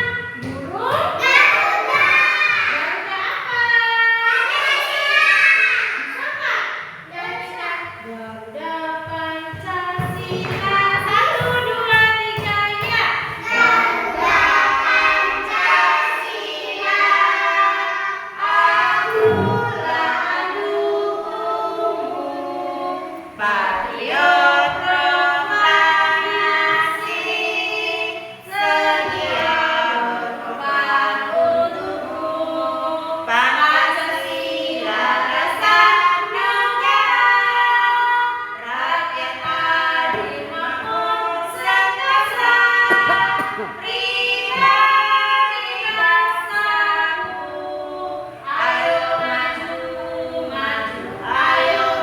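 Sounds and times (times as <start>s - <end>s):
children singing in unison: 0.0s - 52.0s
woman singing: 8.0s - 13.7s.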